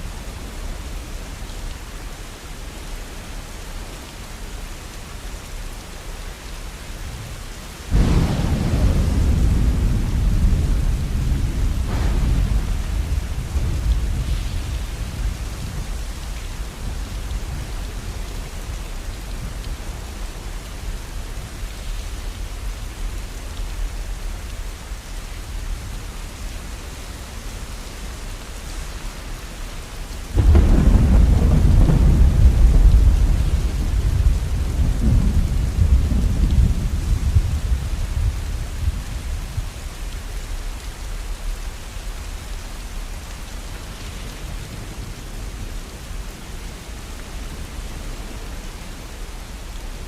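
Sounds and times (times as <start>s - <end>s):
steady rain: 0.0s - 50.0s
rolling thunder: 7.9s - 23.3s, 30.2s - 39.7s.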